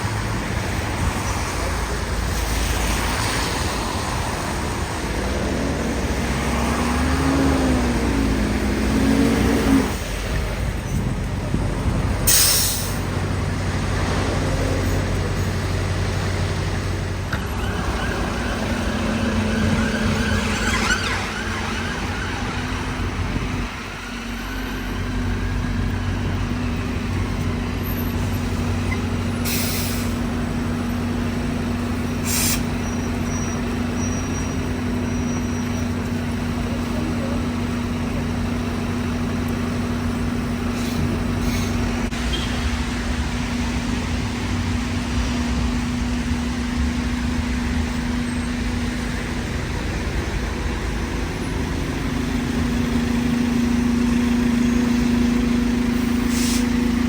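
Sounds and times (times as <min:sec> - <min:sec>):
bus engine droning: 0:00.0 - 0:57.0
street traffic: 0:00.0 - 0:57.0
brief hisses: 0:32.2 - 0:32.7, 0:56.3 - 0:56.7.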